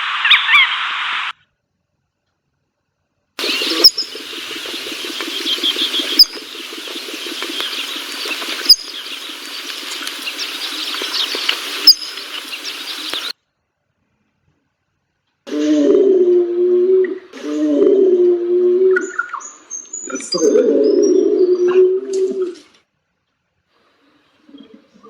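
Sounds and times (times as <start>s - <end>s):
bird calling with quick high notes: 3.4s - 13.4s
steady background hiss: 3.4s - 13.4s
sharp clicks: 3.6s - 13.3s.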